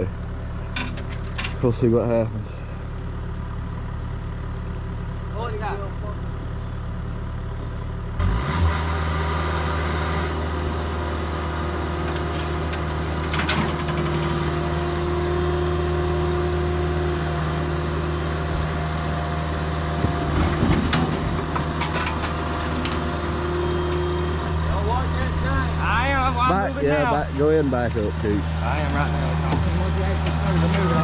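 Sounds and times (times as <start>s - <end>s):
excavator diesel engine running: 0.0s - 31.0s
metal clanks and knocks: 0.7s - 1.7s, 12.1s - 14.3s, 20.0s - 23.2s, 29.5s - 31.0s.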